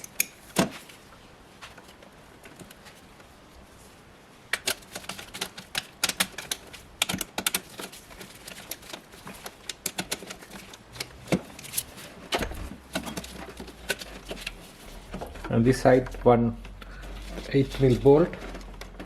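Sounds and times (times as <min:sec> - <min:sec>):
metal hand tools clicking on bolts: 0:00.0 - 0:00.4.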